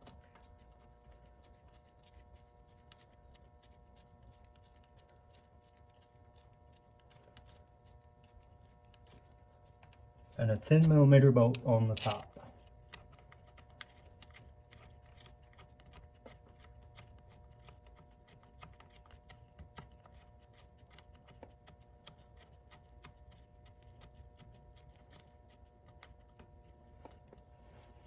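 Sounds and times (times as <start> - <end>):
faint steady hum: 0.0 - 28.0
metallic clicks of hand tools: 11.6 - 12.3.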